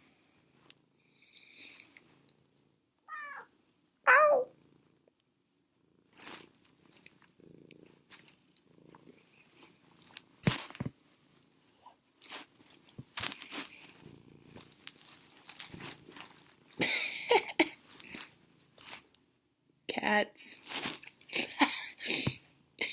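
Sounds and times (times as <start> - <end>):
cat meowing: 3.1 - 3.5, 4.1 - 4.5
cat purring: 4.1 - 16.8.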